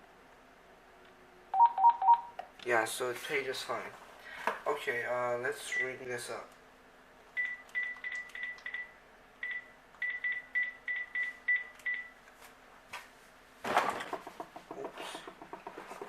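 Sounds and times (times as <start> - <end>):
phone keypad beeps: 1.6 - 2.3, 7.4 - 12.1.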